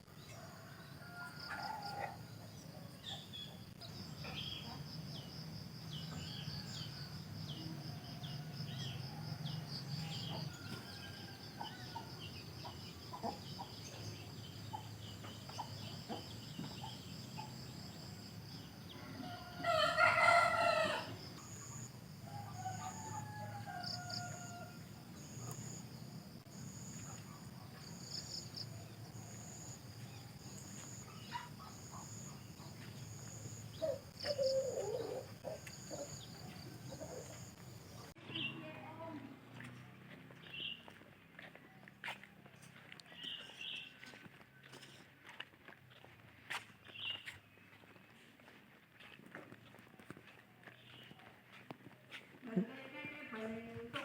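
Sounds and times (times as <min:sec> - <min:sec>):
crickets chirping: 0:00.0 - 0:39.2
rooster crowing: 0:00.3 - 0:02.4, 0:19.0 - 0:25.8.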